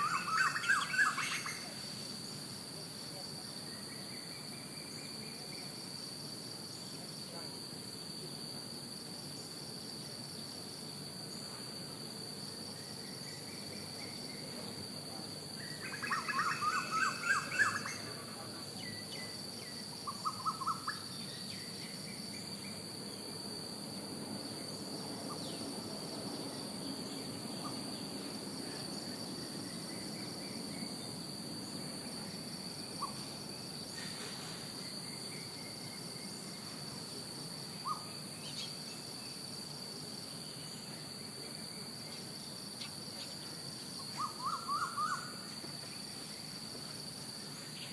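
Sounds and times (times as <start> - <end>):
crickets droning: 0.0 - 47.9.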